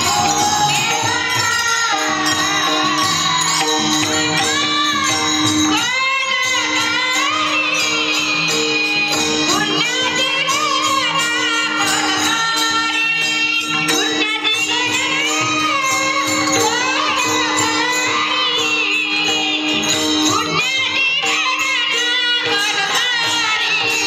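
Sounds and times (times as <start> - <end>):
devotional singing: 0.0 - 3.7
jingling metallic percussion: 0.0 - 24.0.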